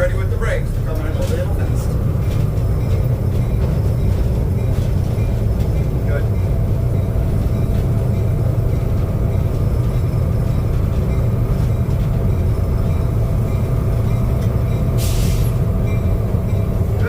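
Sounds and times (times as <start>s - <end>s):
diesel locomotive engine drone: 0.0s - 17.0s
air brake hiss: 15.0s - 15.6s.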